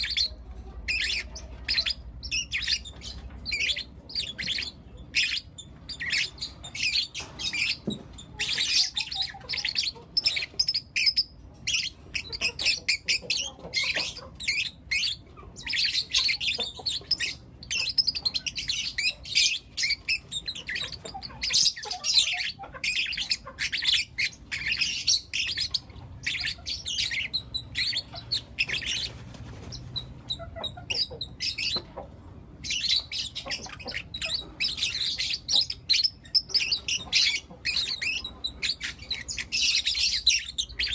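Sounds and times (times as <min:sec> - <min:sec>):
lovebirds chirping and squawking: 0:00.0 - 0:40.9.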